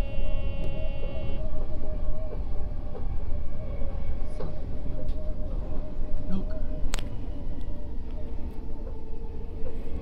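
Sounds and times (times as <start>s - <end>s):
high ringing tone: 0.0s - 1.4s
electric train whine: 0.0s - 10.0s
train wheels rumbling on track: 0.0s - 10.0s.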